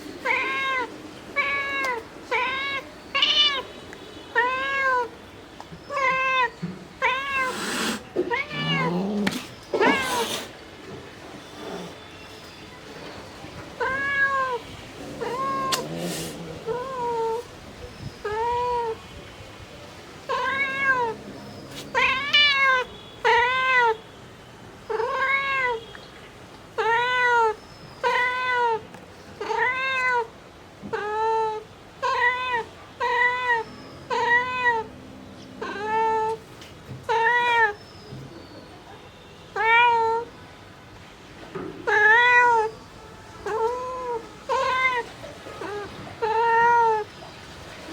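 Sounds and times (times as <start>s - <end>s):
cat meowing: 0.2s - 3.7s, 4.3s - 5.1s, 5.8s - 10.5s, 13.8s - 16.0s, 16.6s - 17.5s, 18.2s - 19.0s, 20.3s - 24.0s, 24.9s - 25.8s, 26.8s - 28.8s, 29.4s - 30.3s, 30.9s - 34.9s, 35.6s - 36.4s, 37.1s - 37.8s, 39.5s - 40.3s, 41.8s - 47.1s.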